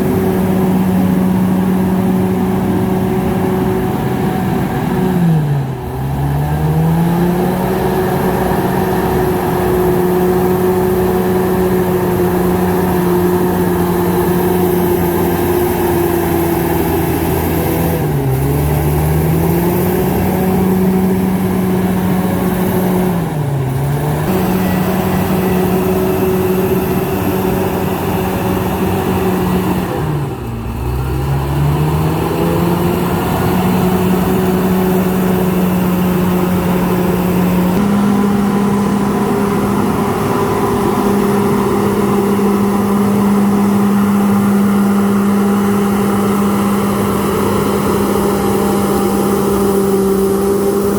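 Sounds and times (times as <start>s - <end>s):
bulldozer diesel engine running hard: 0.0s - 50.9s.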